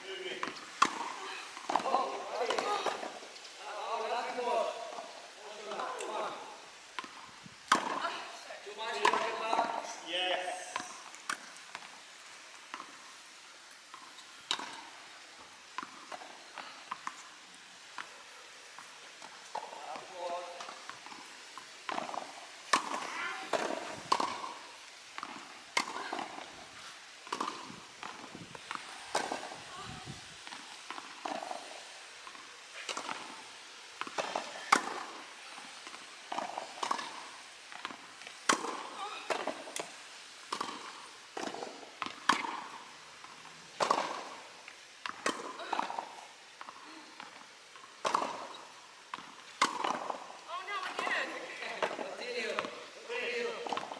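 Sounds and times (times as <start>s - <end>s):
tennis ball struck and bouncing: 21.9s - 24.6s, 34.0s - 35.2s, 35.8s - 39.9s, 40.5s - 44.4s, 45.0s - 50.2s.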